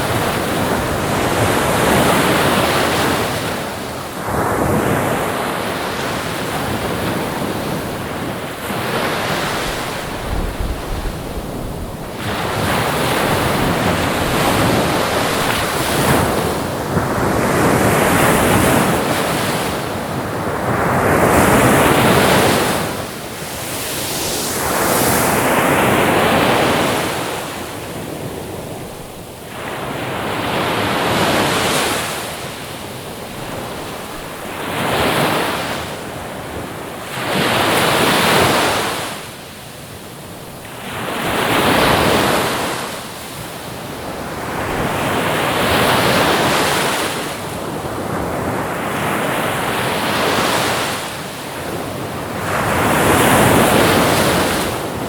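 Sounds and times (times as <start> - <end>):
ocean waves washing in: 5.3 - 35.8.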